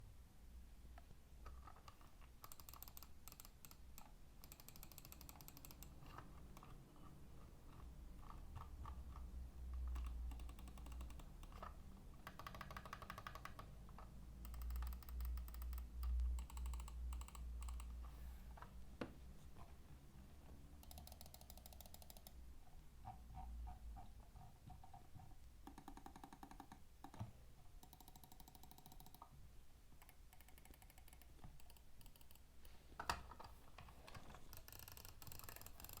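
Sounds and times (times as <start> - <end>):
keyboard typing clicks: 1.5 - 6.8, 7.7 - 18.1, 20.8 - 22.4, 25.6 - 29.3, 30.0 - 32.4.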